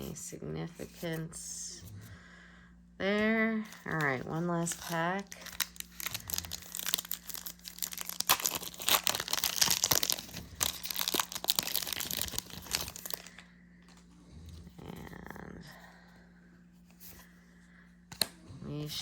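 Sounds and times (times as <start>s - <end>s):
foil wrapper tearing and crinkling: 3.8s - 13.4s.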